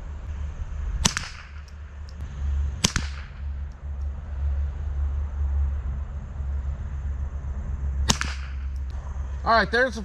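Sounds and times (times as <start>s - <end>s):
rifle shot: 1.0s - 2.0s, 2.8s - 3.6s, 8.0s - 8.9s.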